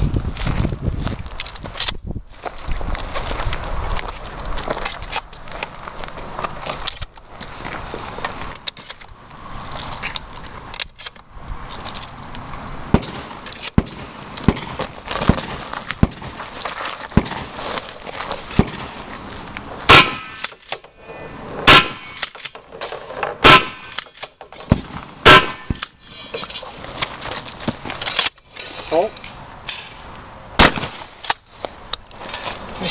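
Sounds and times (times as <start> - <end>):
shotgun shots: 12.9 - 16.4, 18.5 - 19.0, 19.9 - 20.6, 21.6 - 22.3, 23.4 - 24.1, 24.7 - 25.8, 30.6 - 31.3.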